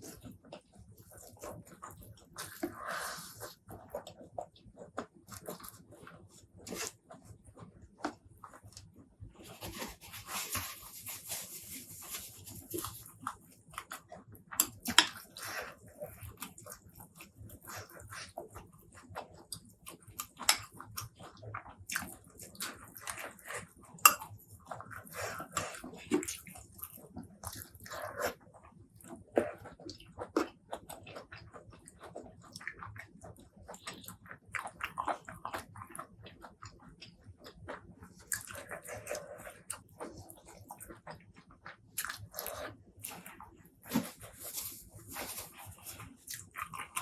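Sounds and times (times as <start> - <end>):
chewing: 0.0 - 47.0.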